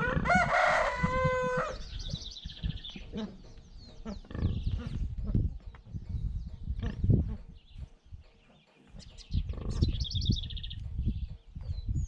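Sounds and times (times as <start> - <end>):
rooster crowing: 0.0 - 1.8
small birds chirping: 1.4 - 12.0.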